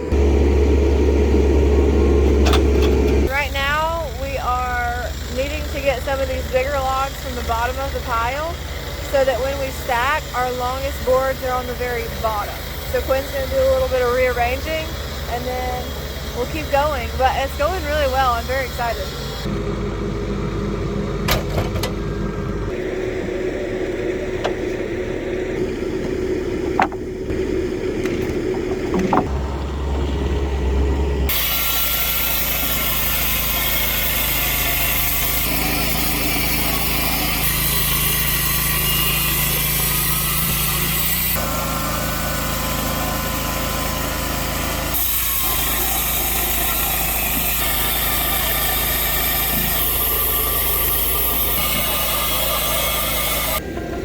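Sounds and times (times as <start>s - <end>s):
heavy machinery engines running: 0.0s - 54.0s
loud hissy engine noise: 0.0s - 54.0s
sharp knocks: 26.7s - 27.1s.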